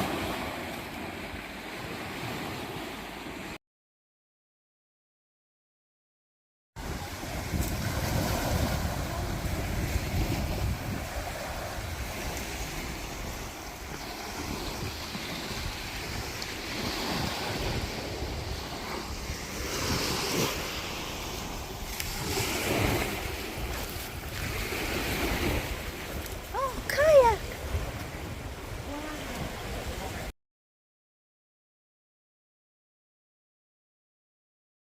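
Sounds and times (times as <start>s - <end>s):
sea water and waves rushing: 0.0s - 3.6s, 6.8s - 30.3s
wind buffeting microphone: 6.8s - 30.3s.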